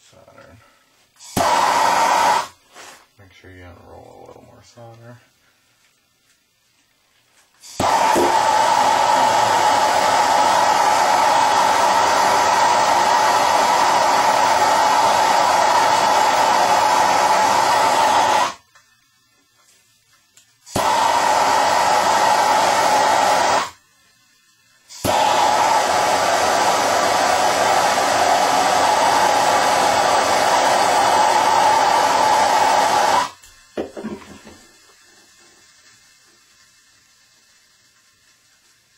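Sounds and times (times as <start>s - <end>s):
gas torch flame: 1.1s - 3.2s, 7.5s - 38.9s
torch ignition click: 7.7s - 19.0s, 20.2s - 23.8s.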